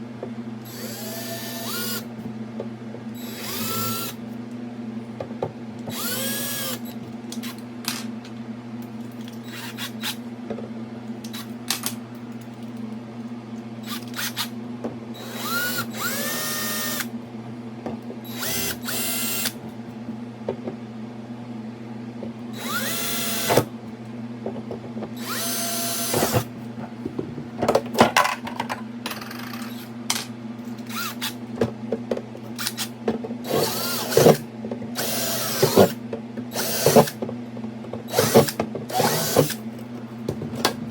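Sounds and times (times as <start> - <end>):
steady low hum: 0.0 - 40.9
power drill whining: 0.7 - 2.0, 3.2 - 4.2, 5.9 - 6.9, 15.2 - 17.1, 18.3 - 19.5, 22.6 - 23.7, 25.2 - 26.5, 33.5 - 34.4, 35.0 - 36.0, 36.6 - 37.2, 38.1 - 39.6.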